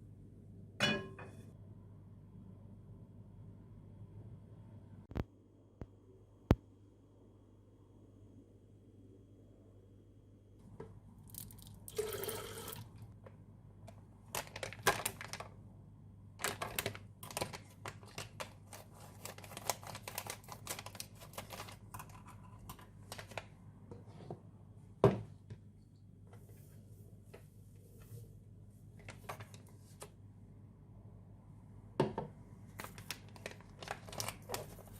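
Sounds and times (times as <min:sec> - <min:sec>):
small clicks and crinkles: 0:13.2 - 0:15.5, 0:16.4 - 0:23.5, 0:32.8 - 0:34.9
packaging rustling or tearing: 0:14.3 - 0:15.5, 0:16.4 - 0:22.2, 0:32.8 - 0:34.9.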